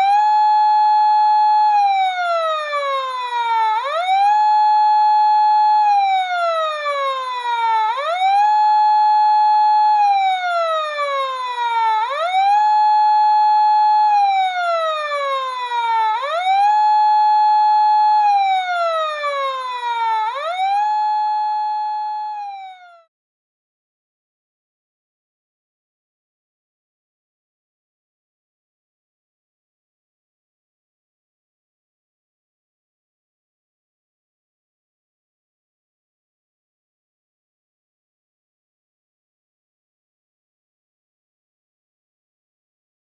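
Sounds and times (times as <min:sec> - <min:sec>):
fire truck siren wailing: 0:00.0 - 0:23.1.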